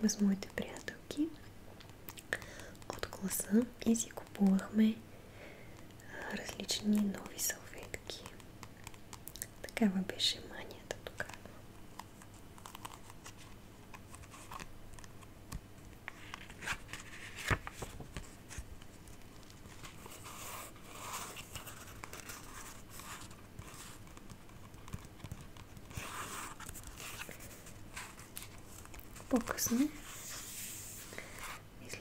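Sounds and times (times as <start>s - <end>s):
paper or plastic crinkling: 16.1s - 31.6s.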